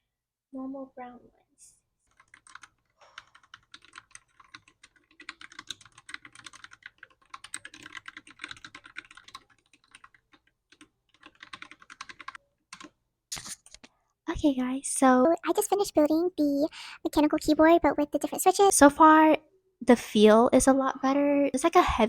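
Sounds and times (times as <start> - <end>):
mechanical keyboard typing: 2.2 - 13.8.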